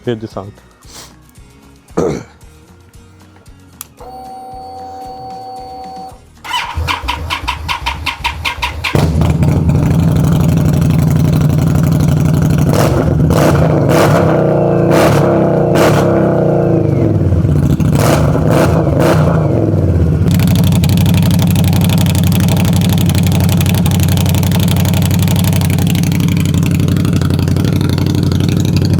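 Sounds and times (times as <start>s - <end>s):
motorcycle starter cranking: 4.0s - 10.0s, 20.3s - 28.9s
loud motorcycle engine revving: 5.7s - 28.9s.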